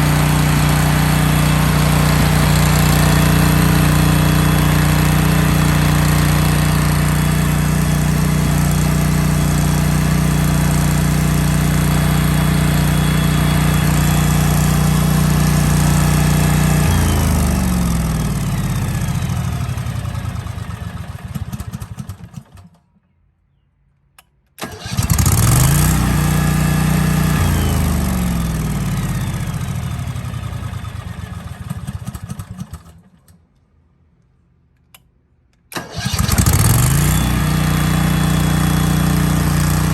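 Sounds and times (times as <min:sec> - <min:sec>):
generator engine running: 0:00.0 - 0:22.7, 0:24.6 - 0:33.0, 0:35.8 - 0:39.9.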